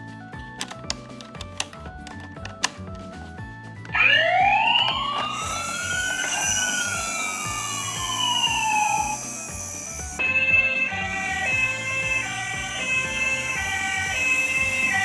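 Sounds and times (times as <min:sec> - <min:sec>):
plinking background music: 0:00.0 - 0:15.0
clicks: 0:00.4 - 0:15.0
siren wailing: 0:03.9 - 0:15.0.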